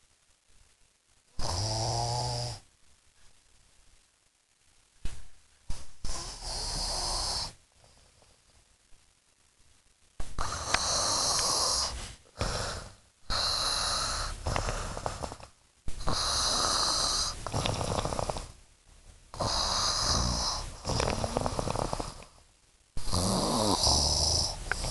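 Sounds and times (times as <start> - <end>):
person snoring: 1.4 - 2.6, 6.0 - 7.6, 10.4 - 18.6, 19.3 - 22.4, 23.0 - 24.9.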